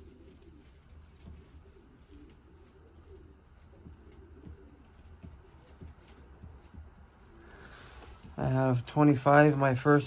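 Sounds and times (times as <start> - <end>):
pigeons cooing: 0.0 - 8.6.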